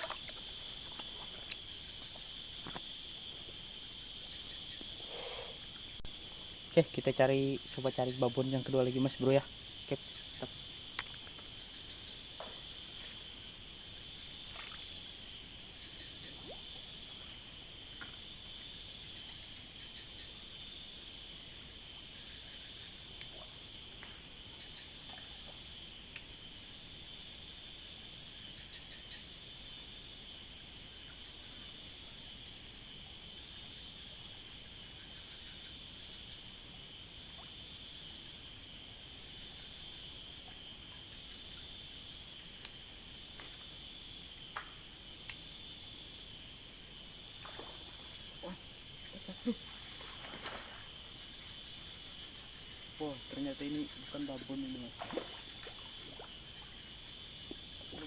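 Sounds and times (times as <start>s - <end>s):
insects droning: 0.0s - 58.0s
pulsing insect call: 0.0s - 58.0s
faint clicks: 44.5s - 45.4s.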